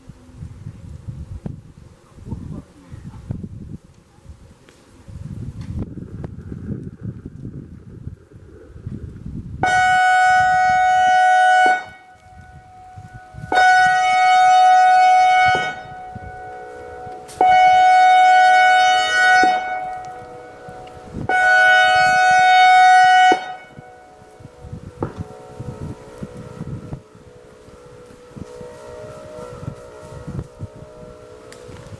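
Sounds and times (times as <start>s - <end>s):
warning siren horn-like blasts: 9.4s - 31.9s.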